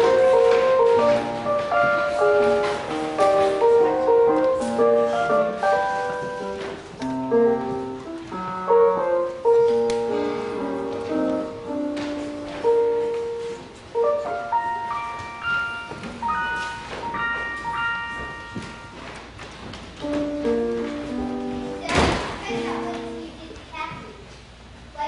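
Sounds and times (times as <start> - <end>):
piano music: 0.0 - 23.6.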